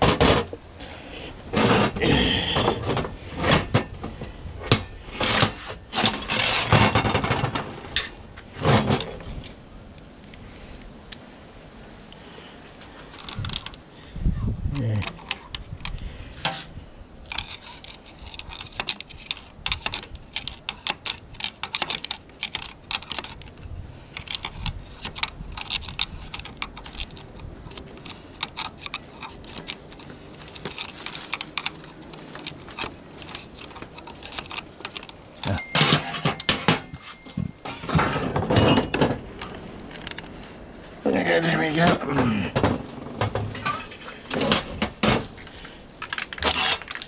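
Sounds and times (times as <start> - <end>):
tools clattering: 1.5 - 9.6, 24.2 - 40.4, 41.6 - 47.0.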